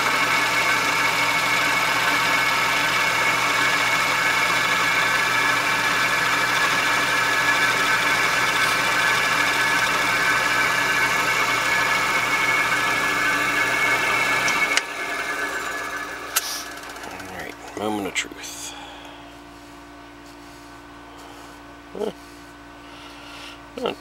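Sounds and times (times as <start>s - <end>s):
milling machine cutting: 0.0s - 18.1s.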